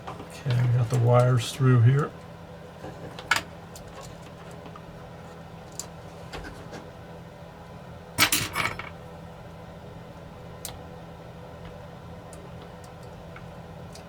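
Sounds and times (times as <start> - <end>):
low electrical hum: 0.0 - 14.0.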